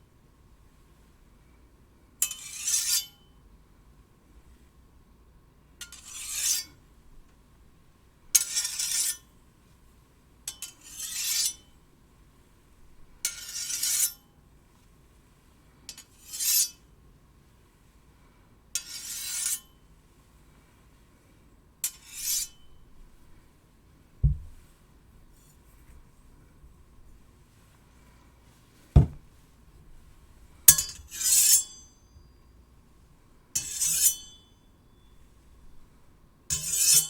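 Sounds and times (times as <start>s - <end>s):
steel blade scraping steel: 2.2s - 3.1s, 5.8s - 6.7s, 8.4s - 9.3s, 10.5s - 11.7s, 13.3s - 14.2s, 15.9s - 16.8s, 18.8s - 19.7s, 21.9s - 22.8s, 30.7s - 32.4s, 33.6s - 35.3s, 36.5s - 37.0s.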